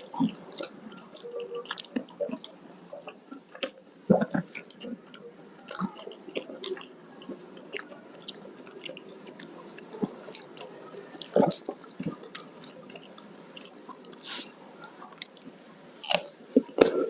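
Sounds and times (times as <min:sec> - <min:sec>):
mouth clicks and smacks: 0:00.0 - 0:17.0
person chewing wetly: 0:00.0 - 0:17.0.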